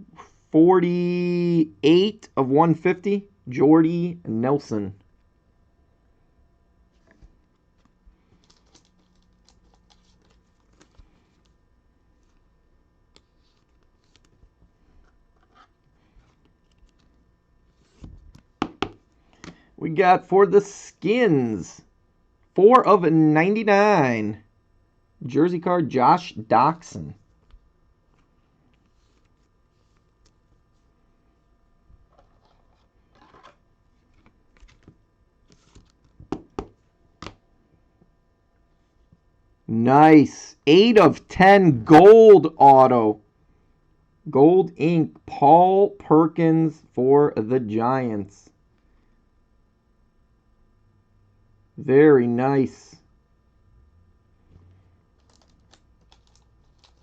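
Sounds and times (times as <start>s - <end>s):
cards clicking and brushing: 7.0s - 11.6s, 13.1s - 19.6s, 32.1s - 37.4s, 55.2s - 57.0s.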